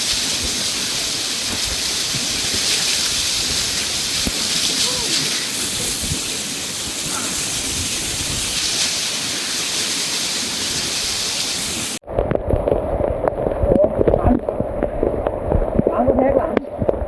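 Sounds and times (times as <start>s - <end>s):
waterfall roaring: 0.0s - 12.0s.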